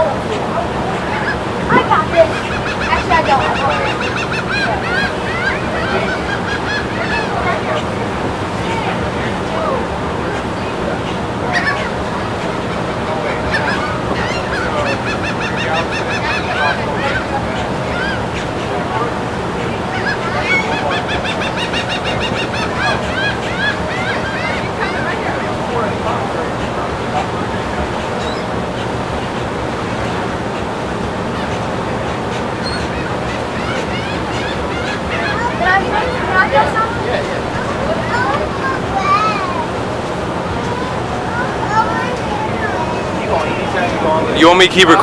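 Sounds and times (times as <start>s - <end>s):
gulls calling: 0.0s - 45.0s
low wind: 0.0s - 45.0s
surf: 0.0s - 45.0s.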